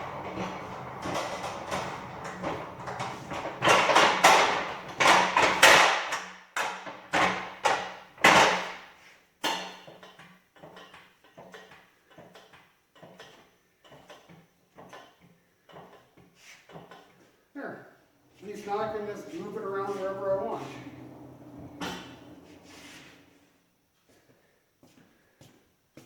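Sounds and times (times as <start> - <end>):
pallet jack metallic clunks: 0.0 - 8.8, 19.4 - 22.9.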